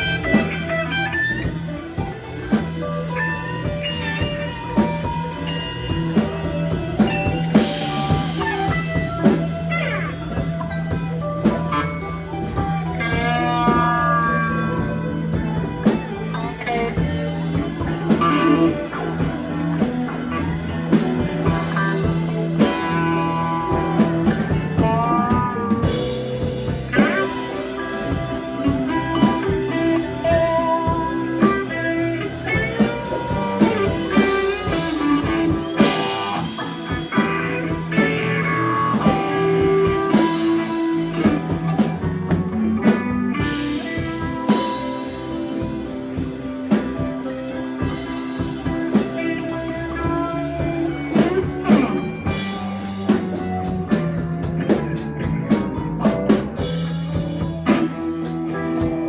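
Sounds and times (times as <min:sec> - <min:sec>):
bass guitar: 0:00.0 - 0:59.0
drum kit: 0:00.0 - 0:59.0
electric guitar bending notes: 0:00.0 - 0:59.0.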